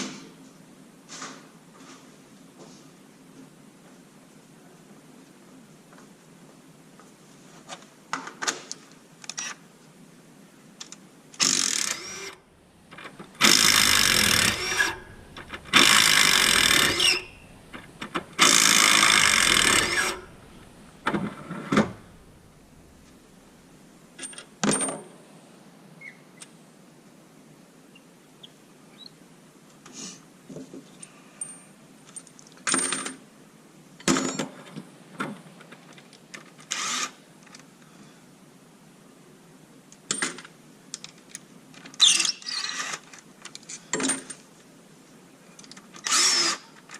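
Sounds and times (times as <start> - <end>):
loud sustained bursts: 11.8 - 23.9.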